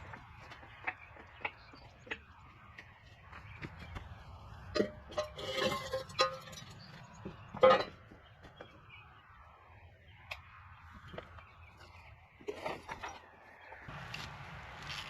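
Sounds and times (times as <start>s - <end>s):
metal knocks and clanks: 4.7s - 8.1s.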